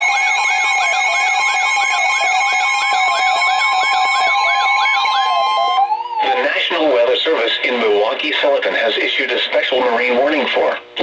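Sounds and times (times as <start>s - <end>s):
rising and falling siren sweep: 2.5s - 6.6s.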